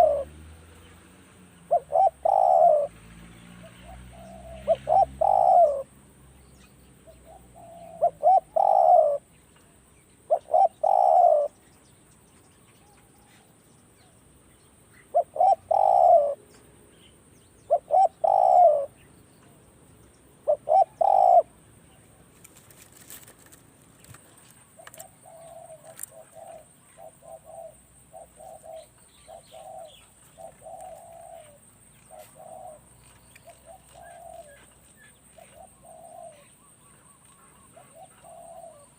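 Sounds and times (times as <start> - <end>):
dove cooing: 0.0 - 0.5, 1.7 - 3.0, 3.6 - 6.0, 7.0 - 9.3, 10.2 - 11.6, 15.0 - 16.5, 17.7 - 19.0, 20.4 - 21.6, 22.5 - 38.9.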